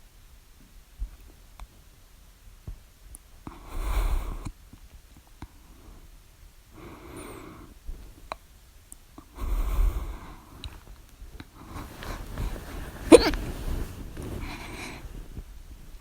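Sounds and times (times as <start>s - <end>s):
heavy breathing into microphone: 3.6s - 4.5s, 6.8s - 8.0s, 9.3s - 10.8s, 11.6s - 15.5s.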